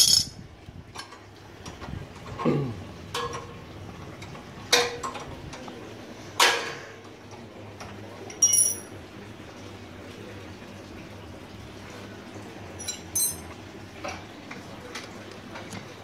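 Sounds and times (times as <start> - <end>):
metal tools clanking: 0.0 - 0.4, 8.3 - 8.9, 12.8 - 13.6.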